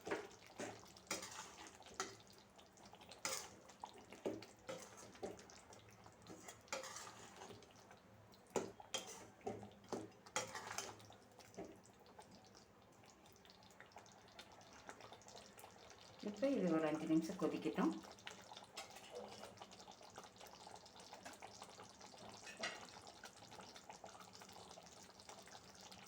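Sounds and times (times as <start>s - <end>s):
spoon scraping cooking pot: 0.1s - 2.3s, 3.2s - 3.6s, 4.2s - 5.5s, 6.2s - 7.6s, 8.6s - 9.7s, 10.4s - 11.0s.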